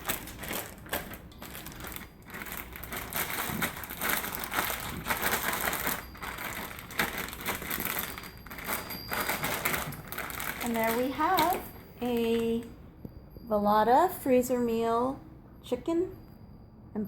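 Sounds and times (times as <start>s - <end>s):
plastic bag crinkling and rustling: 0.0s - 12.7s.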